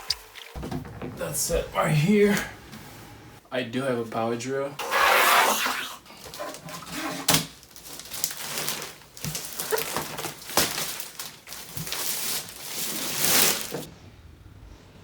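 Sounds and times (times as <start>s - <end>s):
handling rustling: 6.2s - 13.9s.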